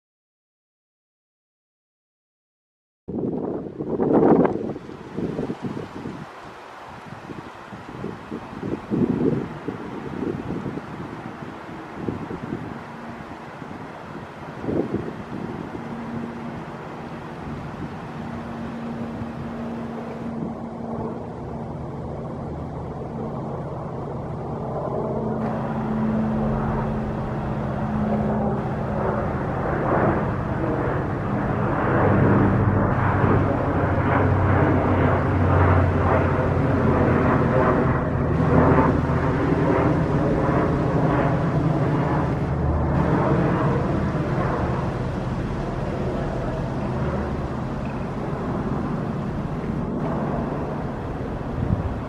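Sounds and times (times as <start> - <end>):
rushing rumble: 3.4 - 52.0
train diesel engine drone: 25.3 - 37.0, 38.0 - 52.0
train rumbling past on tracks: 25.4 - 29.5.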